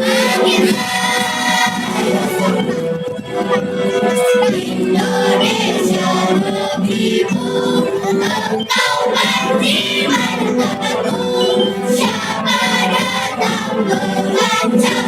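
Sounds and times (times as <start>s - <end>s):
children's choir singing: 0.0s - 15.0s.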